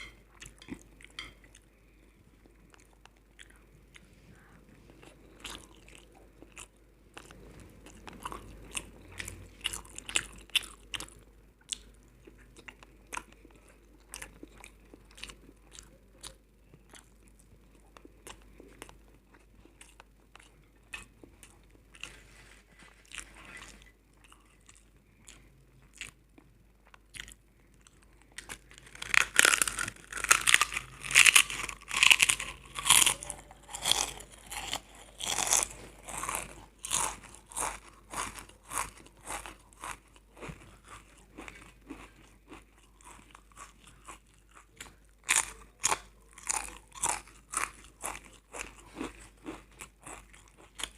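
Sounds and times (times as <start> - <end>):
loud crunching bites: 28.7 - 39.9.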